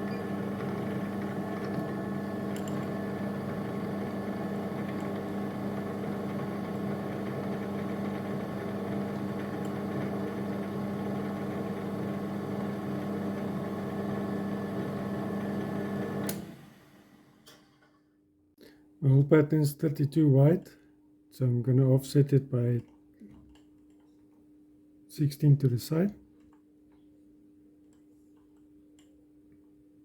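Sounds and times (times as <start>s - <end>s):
milling machine motor hum: 0.0s - 17.2s.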